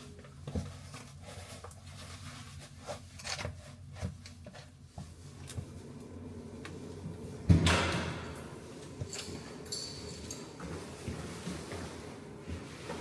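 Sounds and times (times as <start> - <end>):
soft rustling and handling: 0.0 - 5.9
steady low hum: 4.8 - 13.0.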